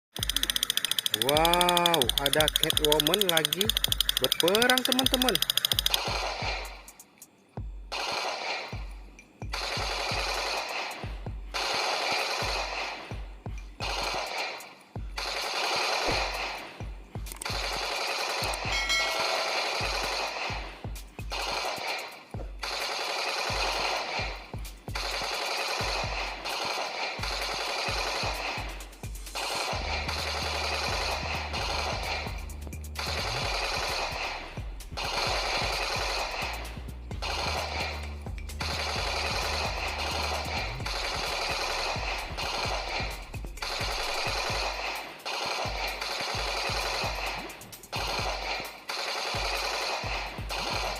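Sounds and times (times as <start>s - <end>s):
toy gun machine-gun fire: 0.1s - 6.7s, 15.2s - 16.6s, 17.3s - 20.6s, 21.3s - 24.4s, 25.0s - 32.4s, 33.0s - 34.4s, 35.0s - 38.0s, 38.6s - 50.9s.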